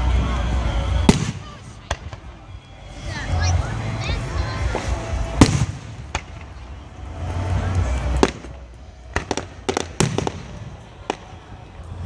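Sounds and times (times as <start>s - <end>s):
firework bangs: 1.0s - 2.4s, 4.0s - 12.0s
sharp firework cracks: 1.1s - 2.3s, 4.6s - 11.6s.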